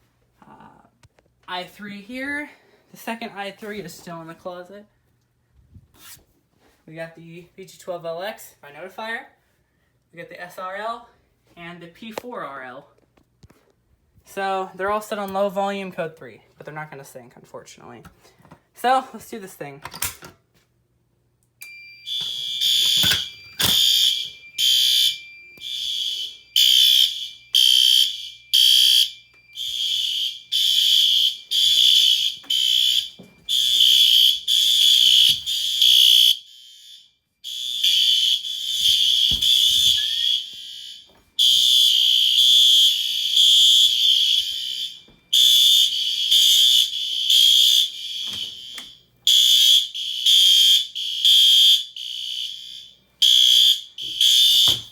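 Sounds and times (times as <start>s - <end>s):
fire alarm horn beeps: 21.6s - 54.9s
steady alarm tone: 21.6s - 54.9s.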